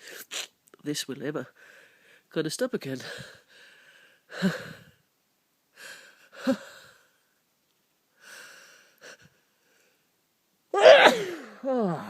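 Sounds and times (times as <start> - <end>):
person sneezing: 10.8 - 12.0.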